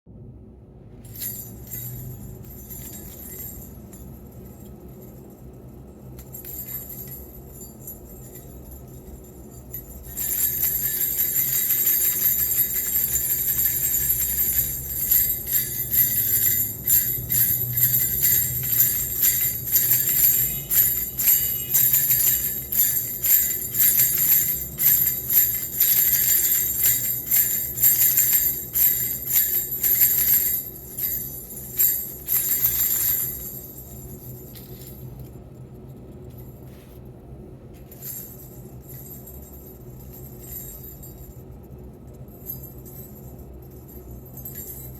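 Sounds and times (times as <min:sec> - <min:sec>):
baby rattle jingle bells shaking: 0:01.0 - 0:36.2, 0:37.8 - 0:44.9.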